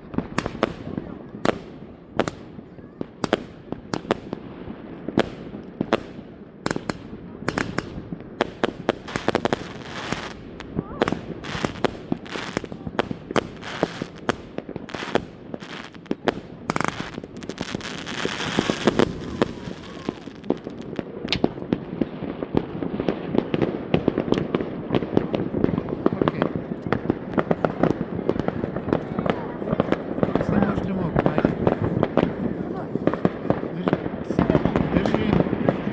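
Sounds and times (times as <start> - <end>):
fireworks bangs: 0.0 - 35.9
fireworks crackling pops: 0.0 - 35.9
fireworks hiss: 8.6 - 21.0.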